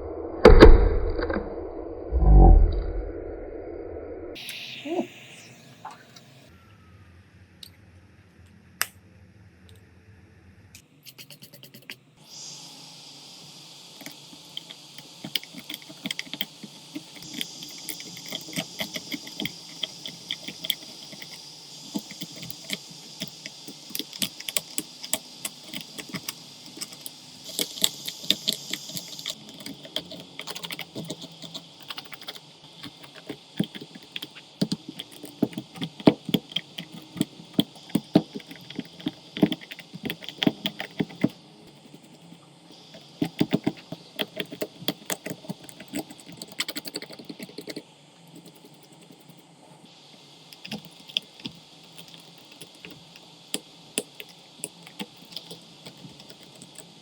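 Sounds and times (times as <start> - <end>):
faint high hiss: 12.2 - 29.4.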